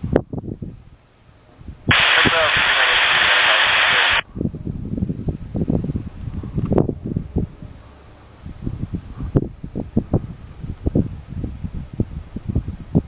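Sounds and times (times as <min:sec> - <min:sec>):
wind rumble on microphone: 0:00.0 - 0:00.9, 0:04.0 - 0:13.0
radio squelch hiss: 0:01.9 - 0:04.2.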